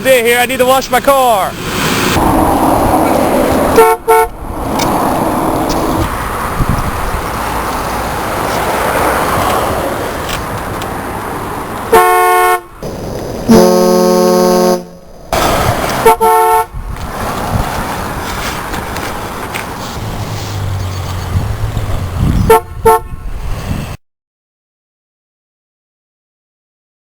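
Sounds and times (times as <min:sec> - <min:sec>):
car horn blasts: 0:03.7 - 0:04.3, 0:11.9 - 0:12.8, 0:13.5 - 0:15.0, 0:16.0 - 0:16.7, 0:22.4 - 0:23.2.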